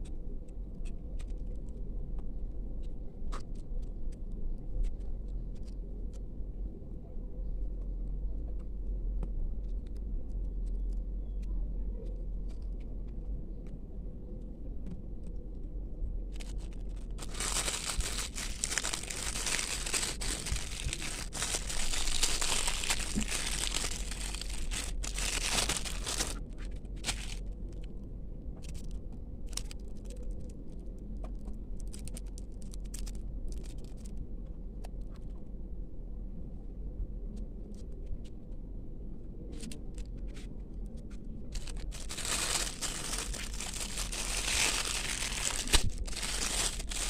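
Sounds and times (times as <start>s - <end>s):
packaging crinkling and tearing: 16.4s - 27.8s, 29.5s - 30.3s, 31.8s - 34.1s, 41.5s - 47.0s.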